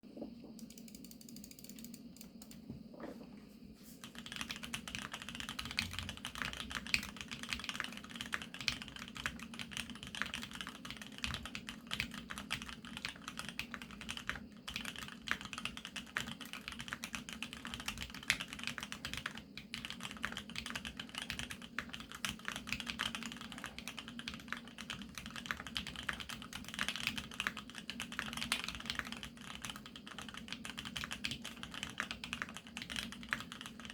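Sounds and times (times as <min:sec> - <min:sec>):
mechanical keyboard typing: 0:00.6 - 0:02.6, 0:04.1 - 0:33.9.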